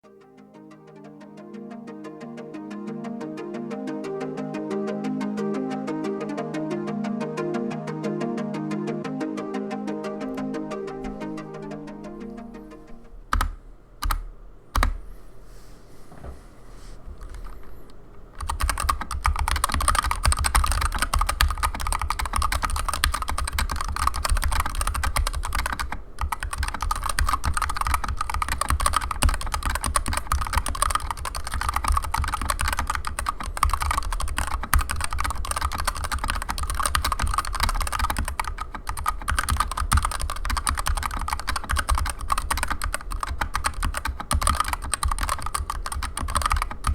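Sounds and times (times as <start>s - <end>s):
mechanical keyboard typing: 13.3s - 15.0s, 18.4s - 46.9s.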